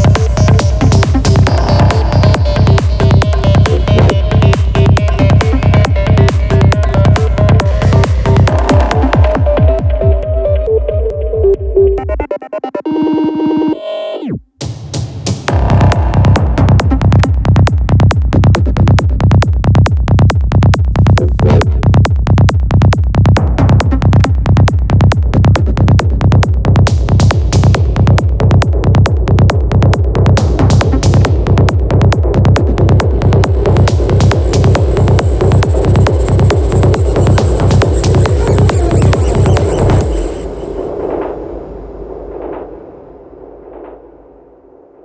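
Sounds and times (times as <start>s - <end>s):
kick drum and bass beat: 0.0s - 12.4s, 14.6s - 44.4s
electronic dance music: 0.0s - 14.4s, 21.0s - 21.8s, 30.4s - 43.1s
rising synth sweep: 33.6s - 42.8s.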